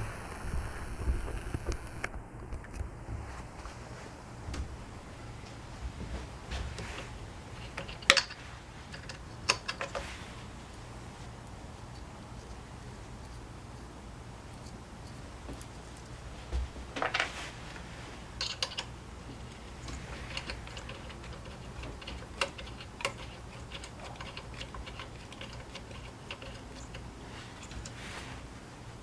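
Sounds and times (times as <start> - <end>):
faint low hum: 0.0 - 29.0
soft rustle: 0.0 - 29.0
tools clicking and rattling: 6.7 - 10.2, 18.3 - 28.0.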